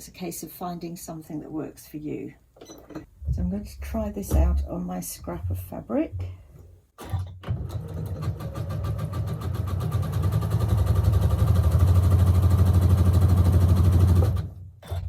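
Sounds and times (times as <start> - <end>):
sewing machine stitching: 7.0 - 14.6.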